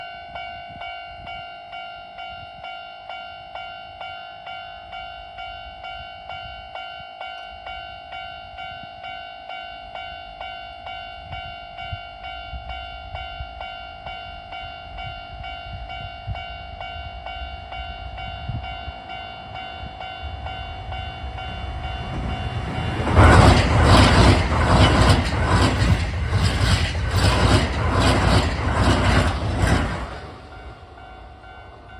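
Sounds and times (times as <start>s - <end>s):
train wheels clattering on rails: 19.2s - 31.9s.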